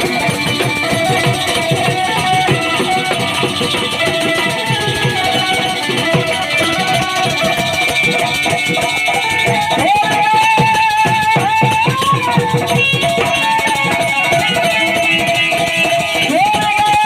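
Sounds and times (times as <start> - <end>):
steady drum beat: 0.0 - 17.0.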